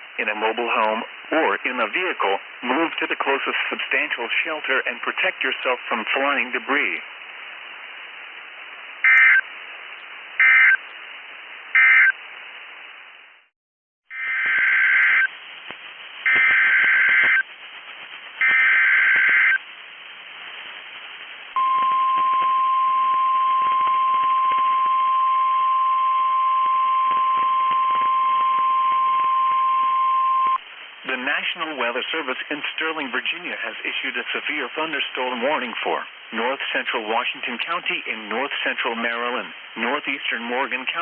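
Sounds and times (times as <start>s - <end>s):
faint radio hiss: 0.0s - 13.5s, 14.2s - 41.0s
steady warning alarm tone: 9.1s - 9.4s, 10.4s - 10.8s, 14.1s - 15.3s, 16.3s - 17.4s, 18.4s - 19.6s
screeching data bursts: 10.4s - 10.8s, 14.2s - 15.3s, 16.3s - 17.4s, 18.4s - 19.6s.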